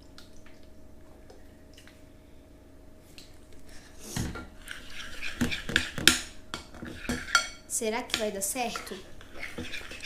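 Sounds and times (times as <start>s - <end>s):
utensil stirring slime in bowl: 3.7s - 10.0s.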